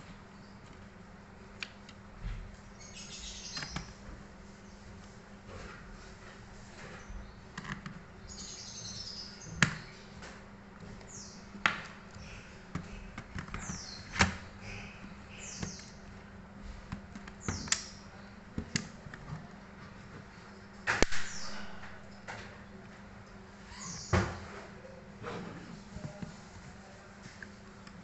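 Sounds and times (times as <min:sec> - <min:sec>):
sharp clicks and taps on plastic: 0:03.5 - 0:04.0, 0:09.5 - 0:14.5, 0:16.9 - 0:19.6.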